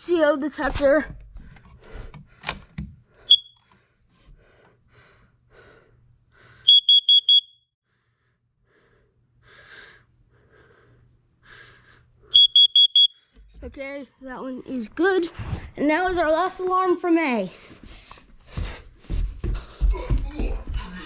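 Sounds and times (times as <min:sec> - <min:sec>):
high-pitched alarm beeps: 0:03.3 - 0:03.6, 0:06.7 - 0:07.7, 0:12.3 - 0:13.2.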